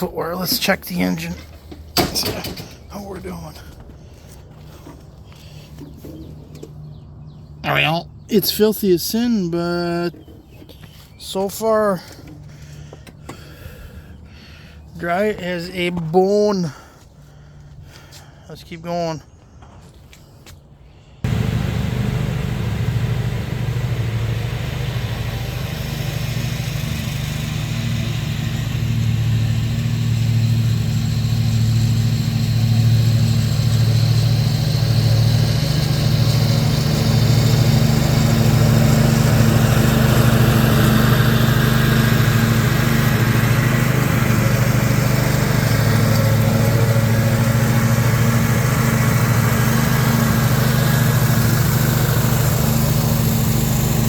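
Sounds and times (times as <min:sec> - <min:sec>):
mower engine running: 0:21.2 - 0:54.0.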